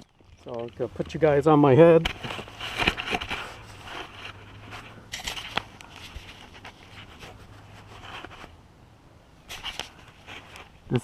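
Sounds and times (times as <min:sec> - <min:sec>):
camera handling clicks and scrapes: 0:02.0 - 0:08.6, 0:09.5 - 0:10.8.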